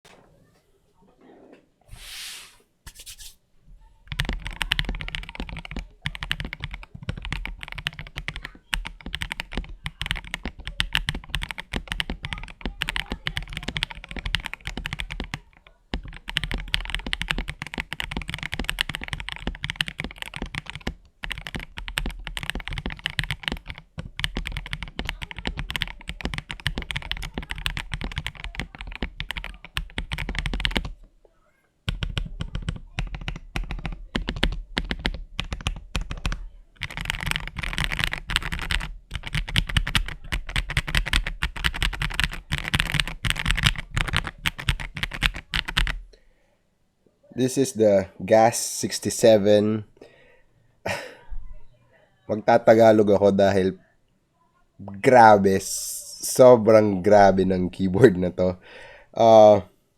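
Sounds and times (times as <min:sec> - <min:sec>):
mechanical keyboard typing: 0:04.1 - 0:31.0, 0:31.9 - 0:46.0.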